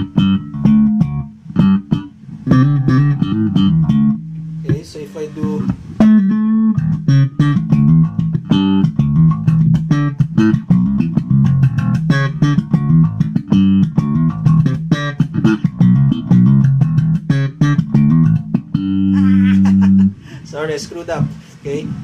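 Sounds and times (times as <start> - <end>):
slap bass guitar: 0.0 - 20.3.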